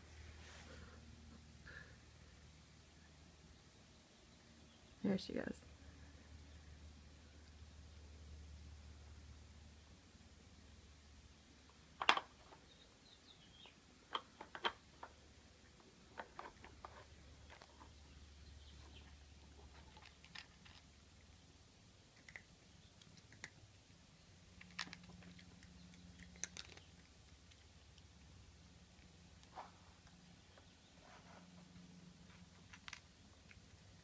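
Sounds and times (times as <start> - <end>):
plastic treat puzzle clacking: 11.9 - 12.6, 14.1 - 15.2, 16.0 - 18.0, 19.6 - 21.0, 24.5 - 28.0
crunching of dry cat treats: 19.5 - 30.2, 32.3 - 34.0.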